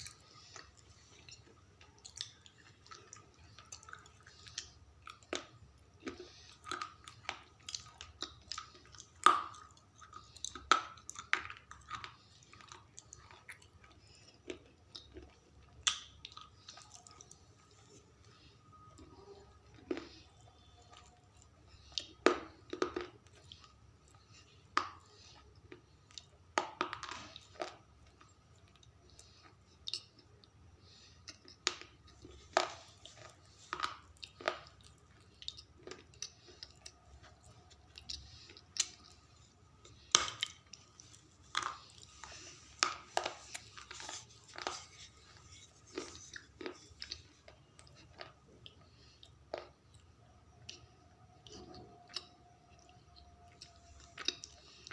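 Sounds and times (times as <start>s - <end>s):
soft chewing: 0.0s - 54.9s
person crunching pencils with teeth: 31.2s - 50.1s.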